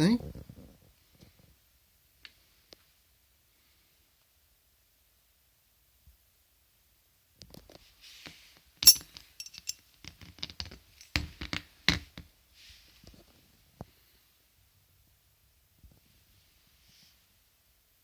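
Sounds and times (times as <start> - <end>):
metal belt buckle clinking: 8.8 - 9.8.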